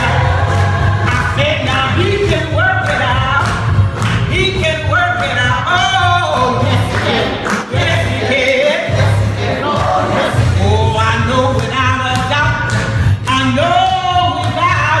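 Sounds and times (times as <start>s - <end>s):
gospel choir singing: 0.0s - 3.2s, 4.9s - 12.0s
low musical accompaniment: 0.0s - 15.0s.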